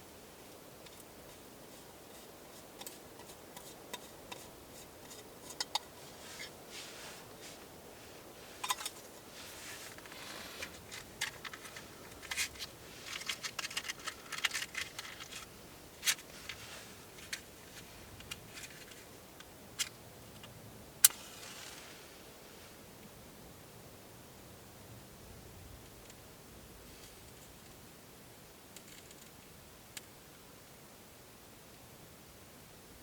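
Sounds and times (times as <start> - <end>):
rustling: 0.4 - 19.2, 21.0 - 22.8.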